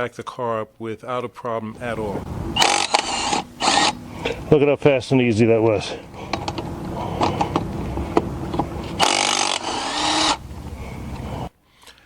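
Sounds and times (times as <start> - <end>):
impact wrench clicks: 2.6 - 4.0
impact wrench hammering: 2.6 - 4.0, 6.3 - 10.4.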